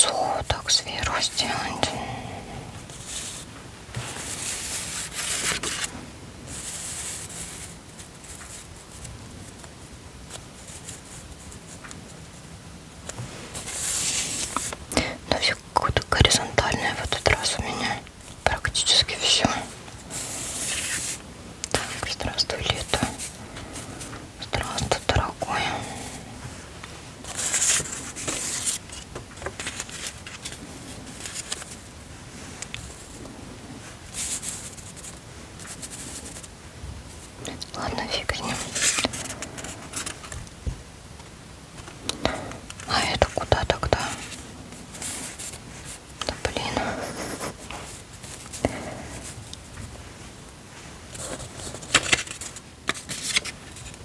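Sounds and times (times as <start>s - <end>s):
paper rustling: 2.9s - 12.2s, 13.2s - 14.8s, 19.6s - 25.2s, 25.9s - 31.9s, 33.9s - 36.5s, 38.5s - 40.5s, 41.7s - 50.0s, 50.8s - 54.0s
paper and sticker sheets rustling: 4.0s - 5.9s, 27.3s - 31.9s, 37.9s - 40.4s, 42.8s - 48.7s, 51.1s - 54.0s.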